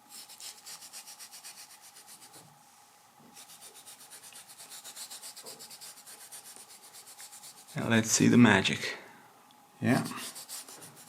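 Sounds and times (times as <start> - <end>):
faint rhythmic rubbing on wood: 0.1 - 2.6, 3.2 - 7.8, 10.0 - 11.0.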